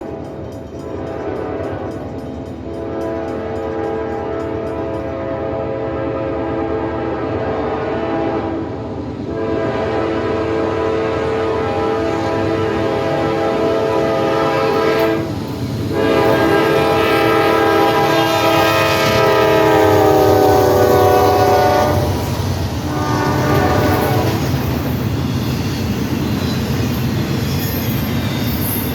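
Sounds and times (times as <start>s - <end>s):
locomotive air horn blasts: 0.0s - 2.0s, 2.7s - 24.6s
wheels clacking: 0.0s - 5.5s
train rumbling by: 0.0s - 28.9s.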